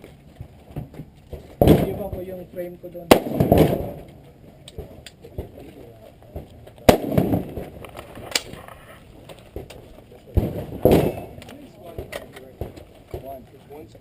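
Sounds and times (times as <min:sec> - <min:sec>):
rifle shots with echo: 0:03.0 - 0:04.1, 0:06.8 - 0:08.5, 0:10.4 - 0:11.4.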